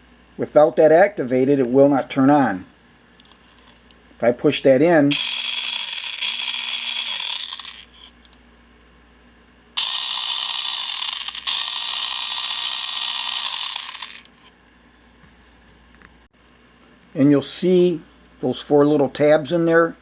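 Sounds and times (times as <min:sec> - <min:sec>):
pepper mill motor whirring: 0:05.1 - 0:08.4, 0:09.8 - 0:14.5.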